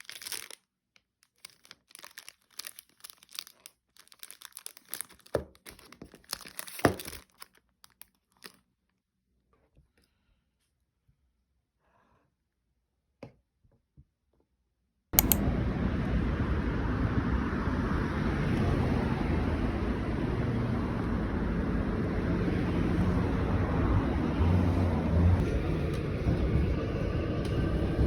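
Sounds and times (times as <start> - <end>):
loud steady rumbling noise: 15.2 - 28.0.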